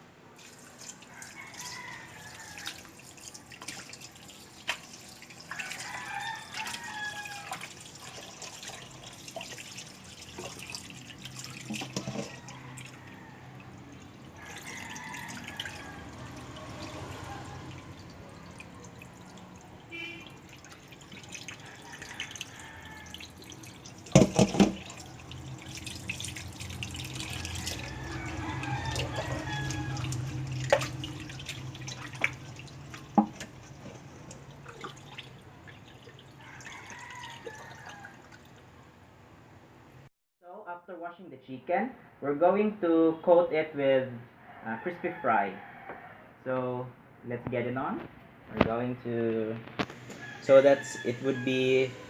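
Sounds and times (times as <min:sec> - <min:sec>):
tap water running into sink: 0:00.4 - 0:13.0, 0:13.6 - 0:38.5
splashing and dripping: 0:00.4 - 0:38.8.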